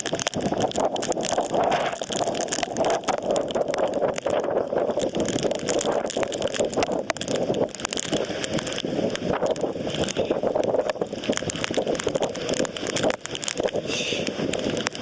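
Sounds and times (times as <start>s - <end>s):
crackling pops: 0.0s - 15.0s
wind buffeting microphone: 0.0s - 15.0s.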